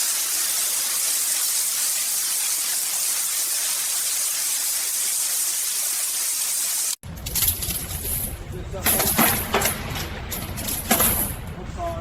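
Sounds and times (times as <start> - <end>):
paint spray gun hissing: 0.0 - 7.0.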